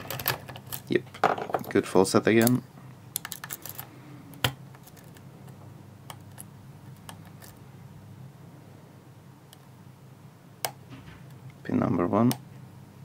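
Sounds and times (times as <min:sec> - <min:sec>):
lock pick clicking against pins: 0:02.4 - 0:05.2.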